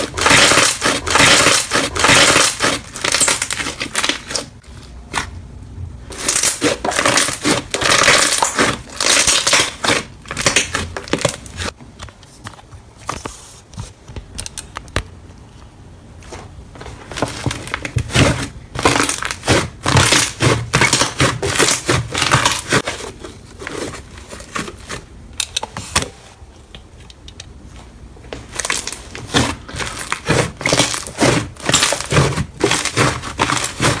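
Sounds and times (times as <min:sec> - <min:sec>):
slime crunchy crackling: 0:00.0 - 0:05.3, 0:06.1 - 0:11.8, 0:17.4 - 0:23.6, 0:28.5 - 0:34.0.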